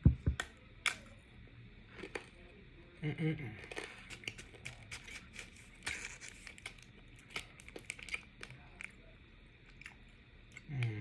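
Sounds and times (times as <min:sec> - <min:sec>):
candy wrapper crinkling: 0:03.6 - 0:09.0.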